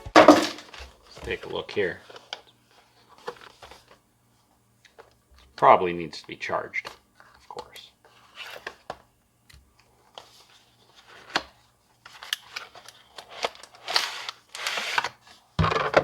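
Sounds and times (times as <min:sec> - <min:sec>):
packaging rustling scrape: 0:12.2 - 0:15.2.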